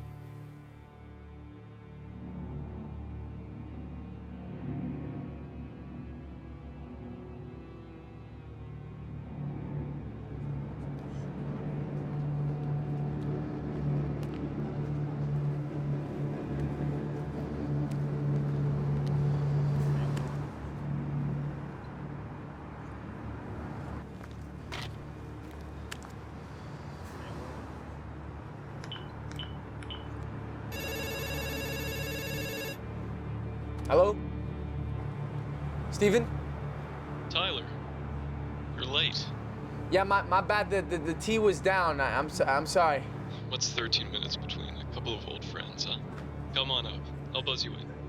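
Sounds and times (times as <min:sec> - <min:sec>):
keypad beeps: 0:28.9 - 0:30.1, 0:30.8 - 0:32.8
buzzy intercom call tone: 0:30.7 - 0:32.8.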